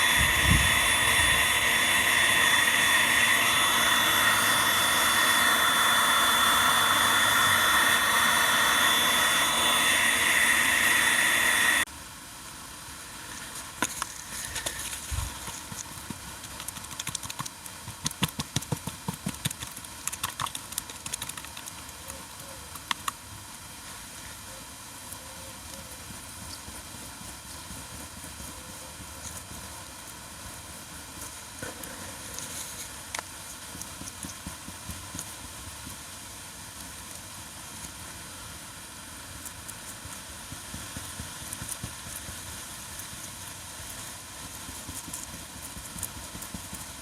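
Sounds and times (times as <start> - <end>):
mechanical whirring with high whine: 0.0 - 11.9.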